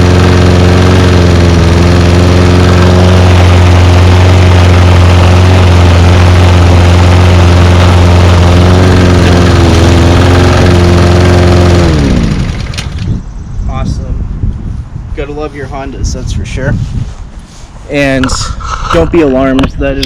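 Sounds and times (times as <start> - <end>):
engine winding down: 0.0 - 13.1
lawn mower engine running: 0.0 - 13.2.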